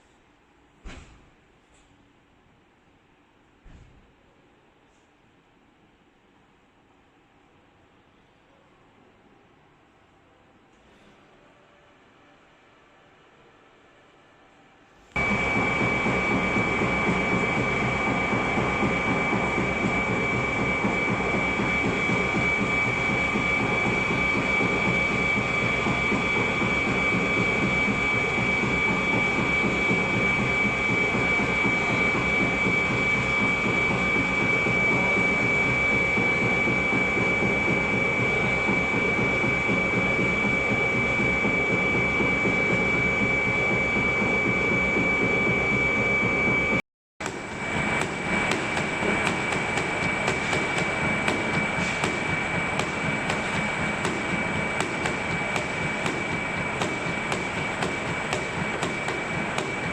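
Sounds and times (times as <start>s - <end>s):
briquette machine running: 15.1s - 59.9s.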